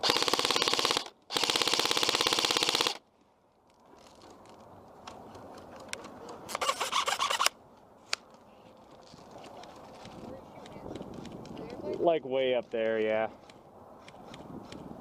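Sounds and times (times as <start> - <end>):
airsoft gun firing full auto: 0.0 - 3.0.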